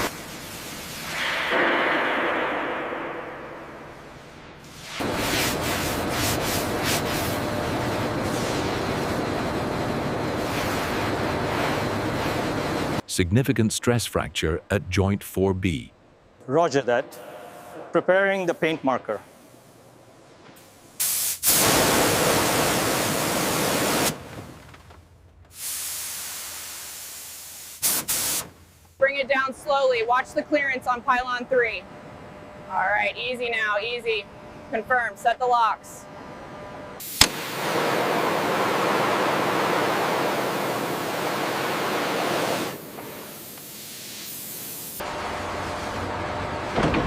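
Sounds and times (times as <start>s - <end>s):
aerosol spray hissing: 21.0s - 24.1s, 25.6s - 28.5s, 41.6s - 45.0s.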